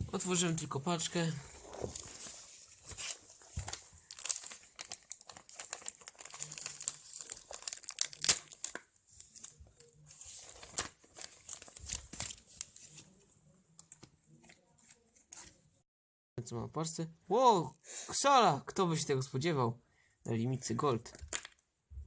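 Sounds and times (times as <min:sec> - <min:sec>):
plastic foil wrapper crinkling: 0:01.7 - 0:12.7, 0:21.1 - 0:21.6.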